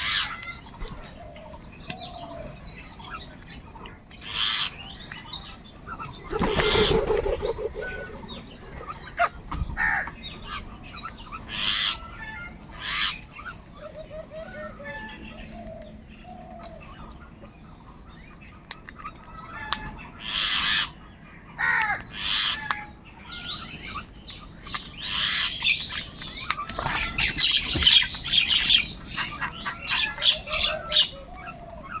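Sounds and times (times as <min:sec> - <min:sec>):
crows cawing: 0:21.6 - 0:22.0.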